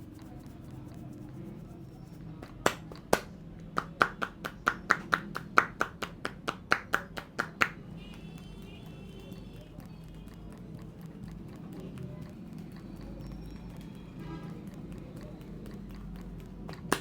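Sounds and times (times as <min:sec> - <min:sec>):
hands slapping head: 0:02.4 - 0:07.8, 0:16.7 - 0:17.0.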